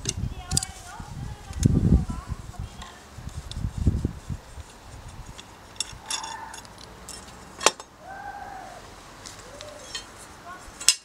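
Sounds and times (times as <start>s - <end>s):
metal blades clinking: 5.7s - 7.8s, 9.8s - 10.2s.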